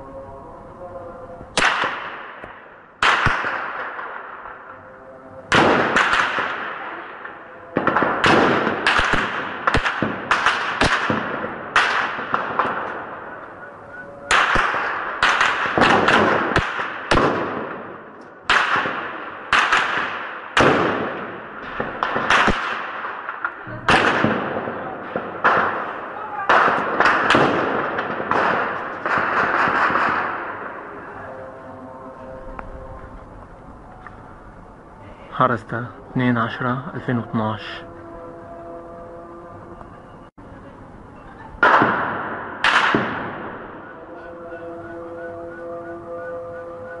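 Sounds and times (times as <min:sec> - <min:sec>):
gunshots echoing: 0:01.6 - 0:31.5, 0:41.6 - 0:44.7.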